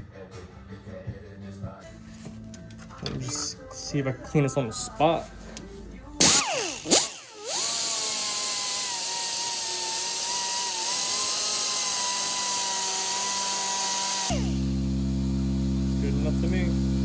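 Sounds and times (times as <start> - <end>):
power tool high-pitched whine: 6.2 - 17.0.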